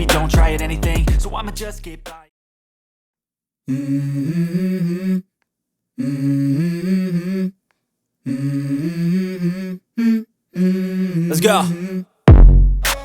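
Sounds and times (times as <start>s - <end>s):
wordless hummed vocal: 0.0s - 2.0s, 3.7s - 5.3s, 6.0s - 7.6s, 8.2s - 12.2s.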